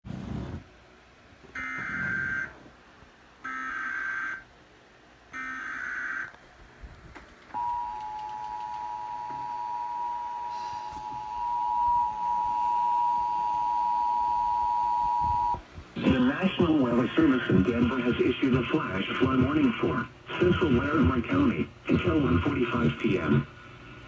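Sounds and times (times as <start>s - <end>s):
two-tone attention signal: 7.6s - 15.6s.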